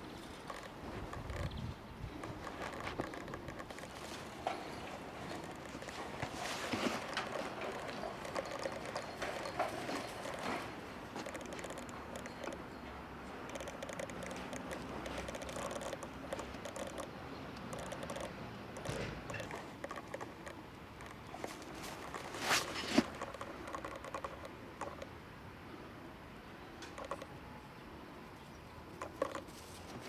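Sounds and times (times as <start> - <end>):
puppy claws ticking on hard floor: 2.2 - 12.6, 13.4 - 25.1.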